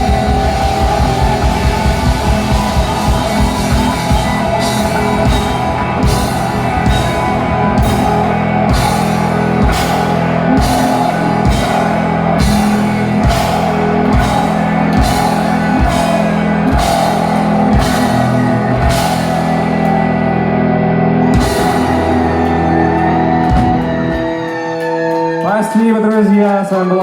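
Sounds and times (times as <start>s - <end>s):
distorted electric guitars: 0.0s - 27.0s
drum kit beat: 0.0s - 27.0s
person singing: 21.2s - 27.0s.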